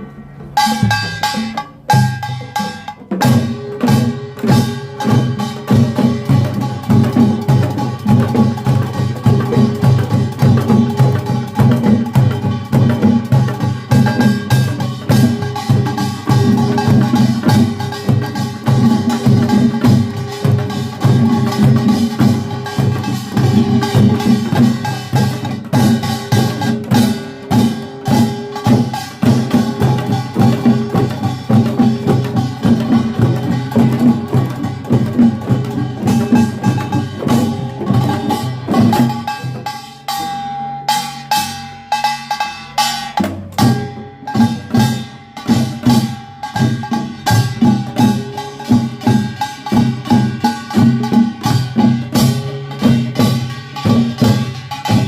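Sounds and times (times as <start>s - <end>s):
drums beating: 0.0s - 55.0s
small gongs clanging: 0.0s - 55.0s
gongs ringing: 10.9s - 55.0s.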